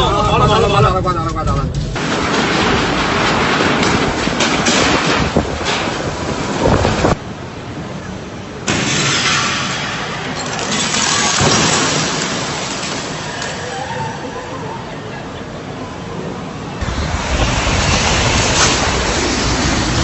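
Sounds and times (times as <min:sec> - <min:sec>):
wind rumble on microphone: 0:00.0 - 0:07.9, 0:16.8 - 0:20.0
wind and rain rushing: 0:00.0 - 0:14.0, 0:15.6 - 0:20.0.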